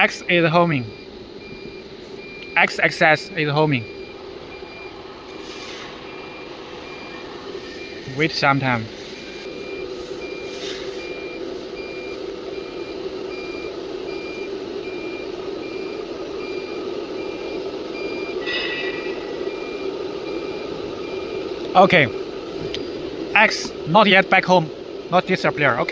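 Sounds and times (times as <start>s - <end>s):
machine beeping: 0.0s - 25.9s
machine hum: 0.0s - 25.9s.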